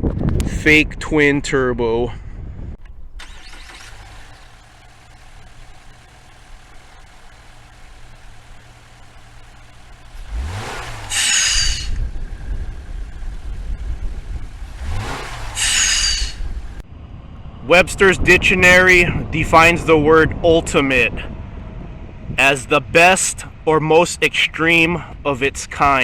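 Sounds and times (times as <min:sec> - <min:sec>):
car engine idling and revving: 0:02.6 - 0:26.0
turbo blow-off hiss and whistle: 0:11.0 - 0:12.0, 0:15.3 - 0:16.4.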